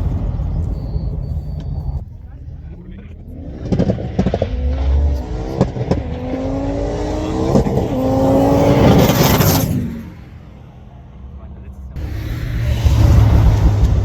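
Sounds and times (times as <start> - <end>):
gear shift crack: 0.0 - 10.3
race car engine accelerating: 0.0 - 14.0.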